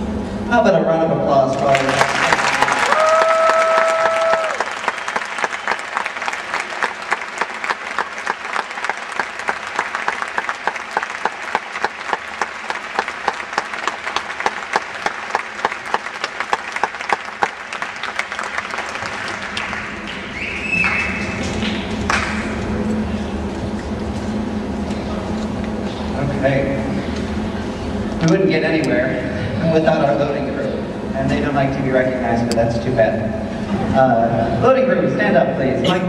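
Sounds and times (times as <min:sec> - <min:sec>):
audience applause: 0:01.5 - 0:22.5.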